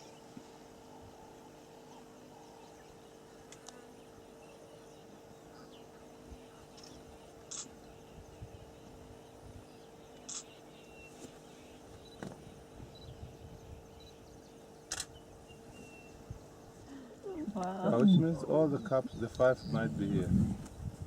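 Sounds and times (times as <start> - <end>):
bird chirps: 9.7 - 16.6.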